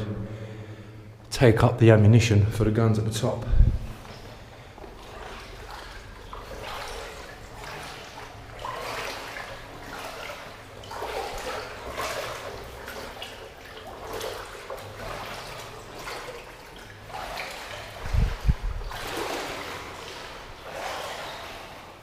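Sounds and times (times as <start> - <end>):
dull low thumps: 3.4 - 4.0, 18.0 - 18.9
water sloshing from wading: 3.5 - 22.0.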